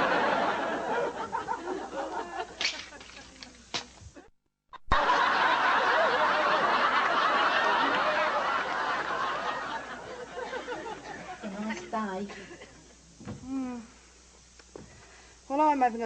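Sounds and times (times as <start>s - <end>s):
studio audience laughing: 0.0s - 2.6s, 4.8s - 11.6s.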